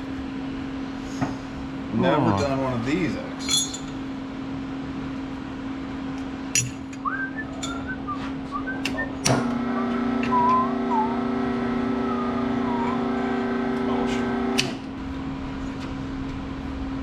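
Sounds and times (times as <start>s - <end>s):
hydraulic pump motor humming: 8.6s - 15.0s.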